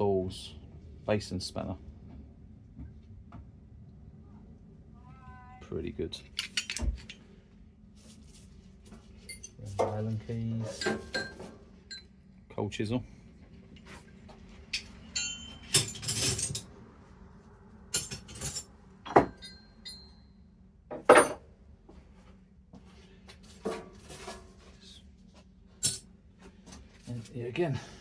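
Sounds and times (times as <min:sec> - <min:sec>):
metal hand tools clinking: 0:06.3 - 0:07.2.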